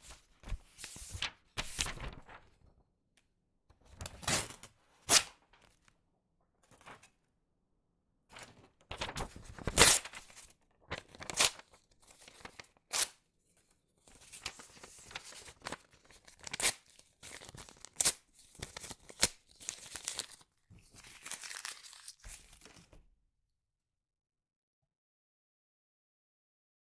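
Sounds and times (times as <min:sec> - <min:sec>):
paper crumpling: 0:00.1 - 0:02.6, 0:08.4 - 0:12.7, 0:14.1 - 0:23.0
paper tearing: 0:09.0 - 0:13.2, 0:21.0 - 0:22.7.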